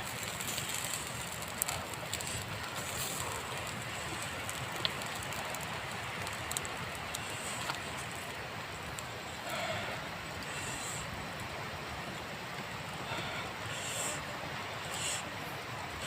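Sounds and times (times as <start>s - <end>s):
outdoor background hiss: 0.0s - 16.0s
faint clicks: 0.1s - 9.6s.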